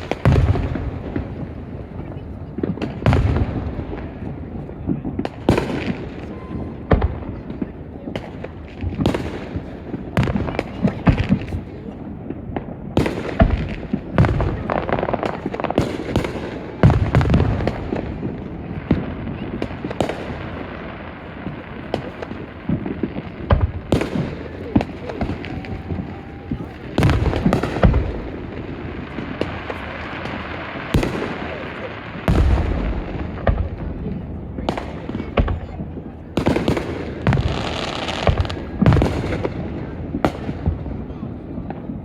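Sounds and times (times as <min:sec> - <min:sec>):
fireworks exploding: 0:00.0 - 0:42.0.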